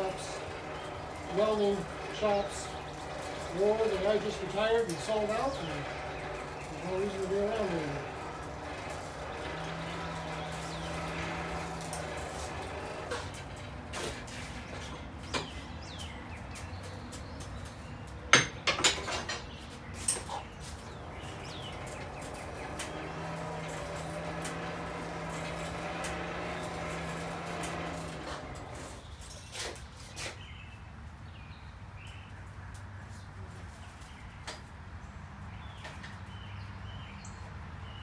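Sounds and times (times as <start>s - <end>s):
air blower humming: 0.0s - 16.4s, 20.6s - 29.1s
sharp metal clanks: 18.3s - 20.3s.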